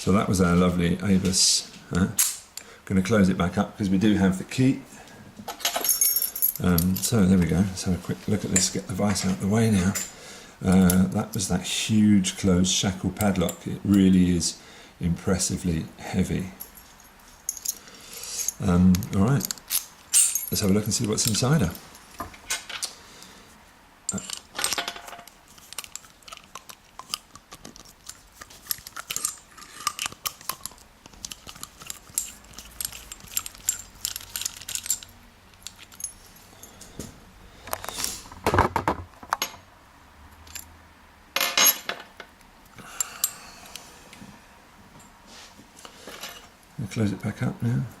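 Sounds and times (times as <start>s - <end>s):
metal parts clicking and rattling: 5.5s - 7.2s, 16.6s - 22.9s, 24.1s - 36.8s.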